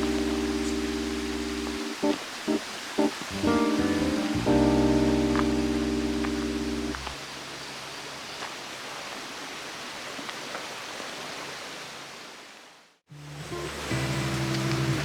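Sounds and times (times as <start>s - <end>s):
piano music: 0.0s - 7.2s
stream rushing: 0.0s - 15.0s.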